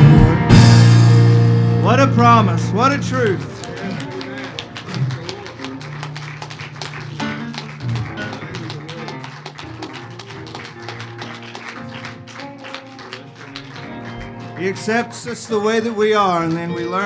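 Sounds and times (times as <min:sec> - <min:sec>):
held bass notes: 0:00.0 - 0:08.5
strummed guitar: 0:00.0 - 0:17.0.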